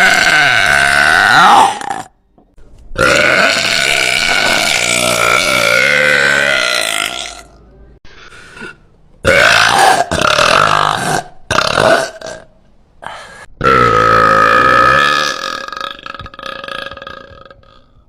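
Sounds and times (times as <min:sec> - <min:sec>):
woman burping loudly: 0:00.0 - 0:02.1, 0:03.0 - 0:07.6, 0:09.2 - 0:12.5, 0:13.6 - 0:18.0.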